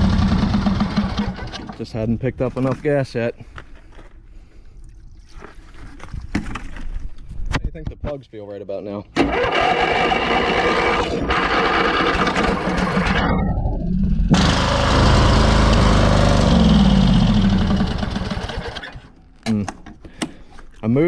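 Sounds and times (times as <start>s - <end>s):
small engine starting and running: 0.0s - 1.8s, 9.2s - 19.1s.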